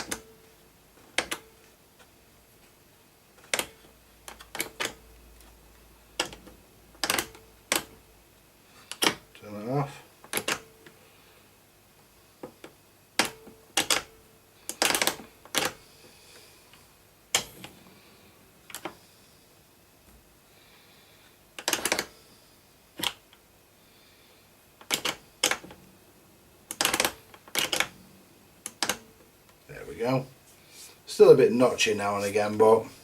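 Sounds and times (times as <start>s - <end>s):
record player mechanism clicking: 1.1s - 1.5s, 3.4s - 5.5s, 6.2s - 8.0s, 8.9s - 9.4s, 10.2s - 11.0s, 12.4s - 14.1s, 14.7s - 15.8s, 18.7s - 19.0s, 21.6s - 22.1s, 23.0s - 23.4s, 24.8s - 25.8s, 26.7s - 27.9s, 28.6s - 29.1s.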